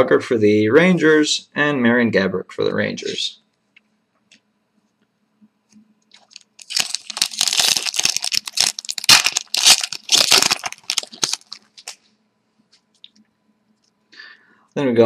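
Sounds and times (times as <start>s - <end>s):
foil wrapper crinkling: 6.1s - 12.0s.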